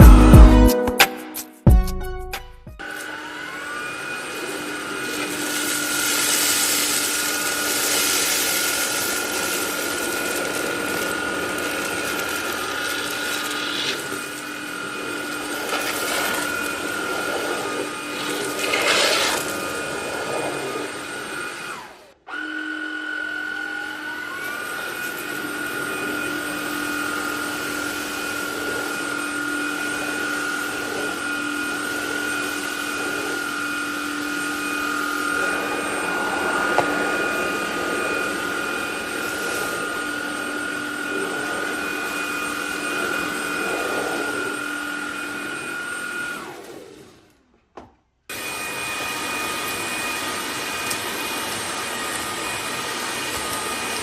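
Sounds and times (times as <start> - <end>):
vacuum motor whining: 2.8 - 47.6, 48.3 - 54.0
rush of air: 35.4 - 38.6.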